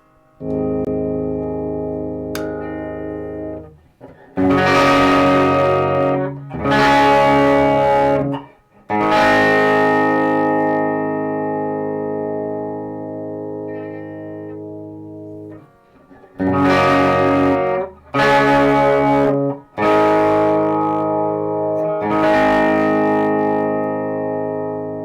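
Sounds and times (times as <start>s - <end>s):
electric guitar chords: 0.0s - 25.0s.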